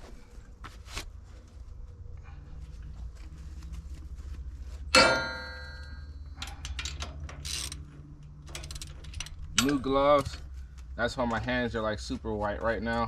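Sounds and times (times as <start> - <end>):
metallic clang of steel: 4.9 - 7.2
metal tools clinking: 4.9 - 10.5.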